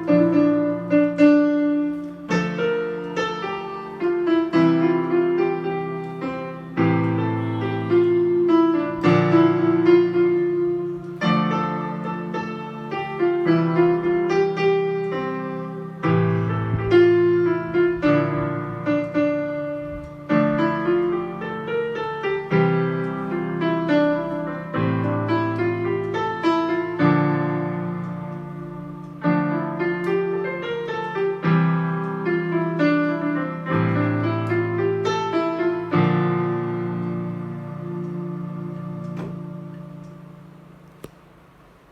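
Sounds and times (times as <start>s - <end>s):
keyboard playing piano piece: 0.0s - 41.9s.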